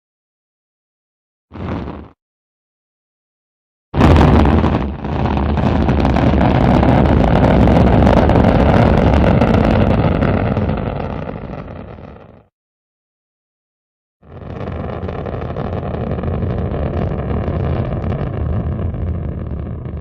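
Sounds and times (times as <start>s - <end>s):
rocket launch rumble: 4.0s - 12.5s, 14.3s - 20.0s.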